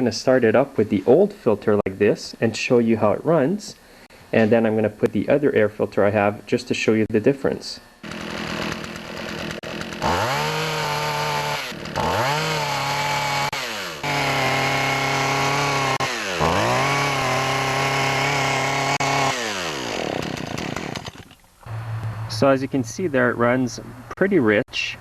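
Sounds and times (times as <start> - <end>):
chainsaw revving: 8.0 - 22.3.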